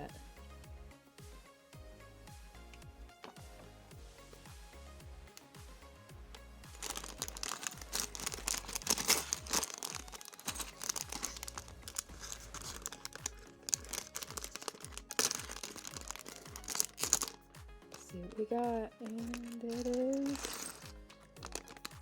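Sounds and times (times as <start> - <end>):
soft background music: 0.0 - 22.0
plastic wrapping crinkling and tearing: 6.4 - 22.0.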